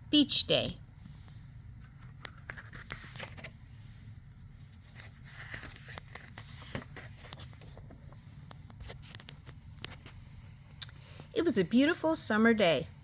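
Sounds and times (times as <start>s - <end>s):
steady low hum: 0.0s - 13.0s
paper rustling: 1.8s - 10.2s.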